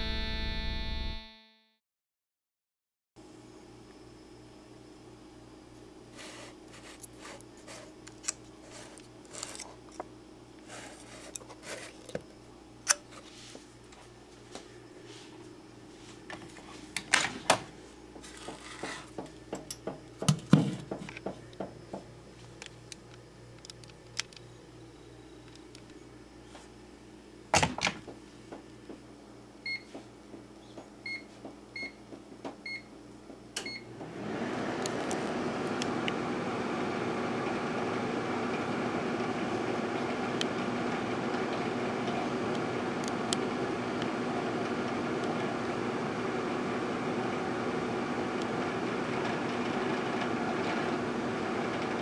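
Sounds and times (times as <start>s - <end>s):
low steady hum: 3.2s - 33.9s.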